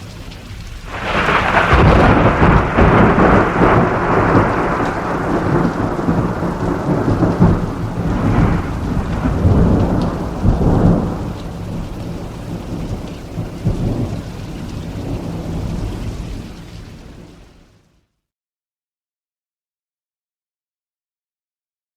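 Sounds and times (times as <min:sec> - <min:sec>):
thunder rumbling: 0:00.0 - 0:17.5
steady rain: 0:00.0 - 0:18.1.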